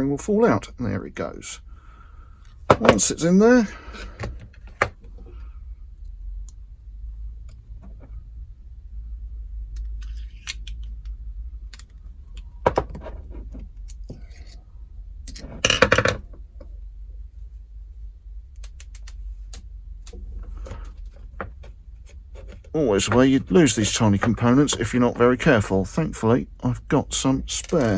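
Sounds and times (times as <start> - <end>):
metal parts clicking and clinking: 27.6 - 27.9.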